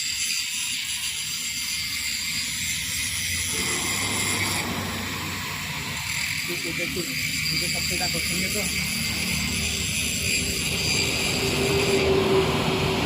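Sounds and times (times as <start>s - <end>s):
thin steady whining tones: 0.0s - 13.0s
low mechanical hum: 2.7s - 7.5s.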